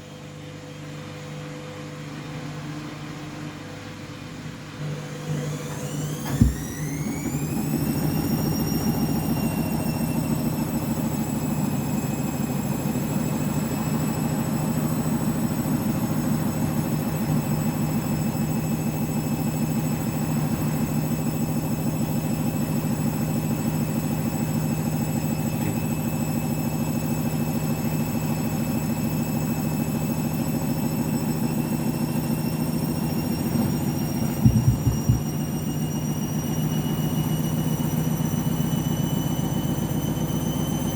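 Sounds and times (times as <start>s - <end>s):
washing machine motor whine: 0.0s - 40.9s
drum turning hum: 6.3s - 6.8s, 33.4s - 35.6s
loud thumps: 6.4s - 6.7s, 33.6s - 35.5s.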